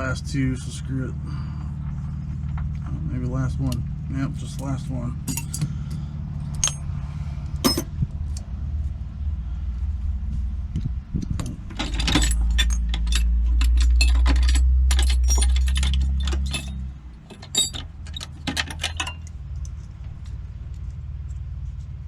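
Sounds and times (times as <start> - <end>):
low rumble: 0.0 - 17.1
lock-picking tools clicking: 5.3 - 5.7.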